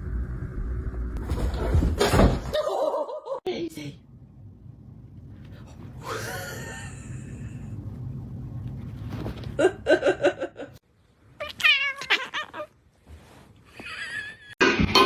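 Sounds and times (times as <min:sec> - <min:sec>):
cat meowing: 0:11.4 - 0:12.8.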